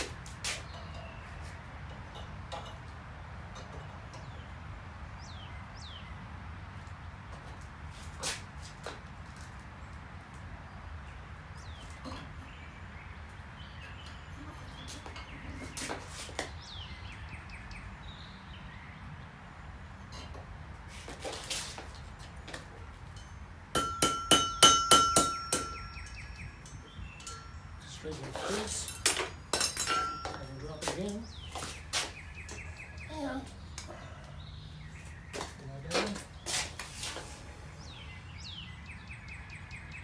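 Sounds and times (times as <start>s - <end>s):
light metal taps and clinks: 1.8s - 4.4s, 22.5s - 31.7s
hammer ringing on an anvil: 23.2s - 30.9s.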